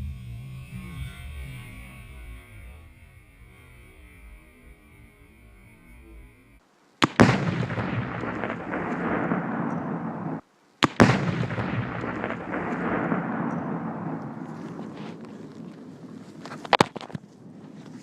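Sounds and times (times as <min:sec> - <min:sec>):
explosion boom echoing: 0:01.6 - 0:15.2
rifle shot: 0:07.0 - 0:15.2.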